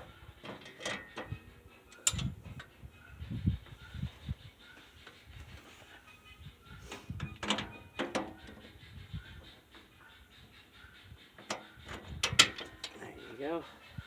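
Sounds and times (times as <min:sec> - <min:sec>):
metal parts knocking and clanking: 0:00.4 - 0:01.3.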